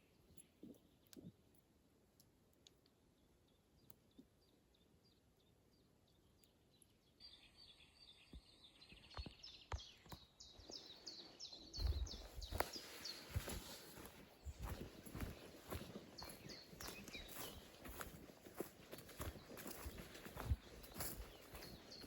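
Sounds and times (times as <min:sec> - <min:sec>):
faint bird chirping: 0:02.6 - 0:22.0
soft footsteps on forest path: 0:08.3 - 0:22.0.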